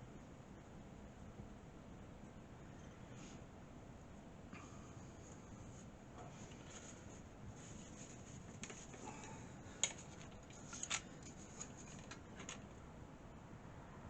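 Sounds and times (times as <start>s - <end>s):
small clicks and scrapes: 6.2s - 12.8s.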